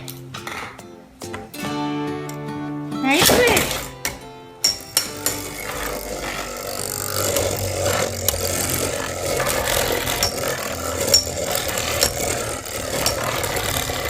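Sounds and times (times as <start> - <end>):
tops clashing clicks: 3.2 - 14.0
spinning tops whirring and rattling: 4.7 - 14.0.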